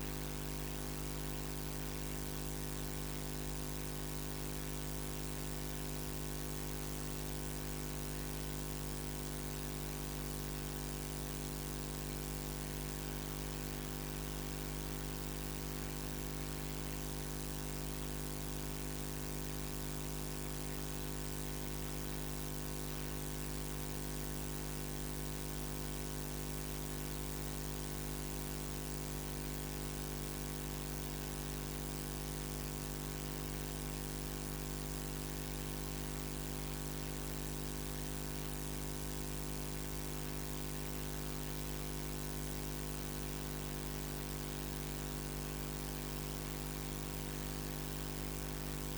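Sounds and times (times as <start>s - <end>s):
electrical hum with buzz: 26.3s - 48.9s.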